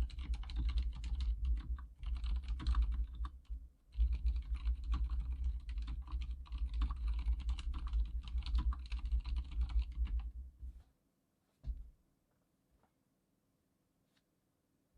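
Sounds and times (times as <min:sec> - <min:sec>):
fast typing on a keyboard: 0:00.0 - 0:10.3.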